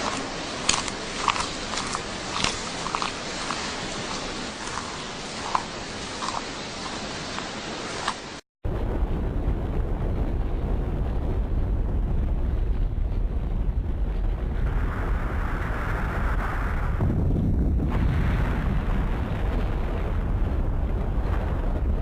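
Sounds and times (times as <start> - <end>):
deep explosion rumble: 8.6 - 22.0.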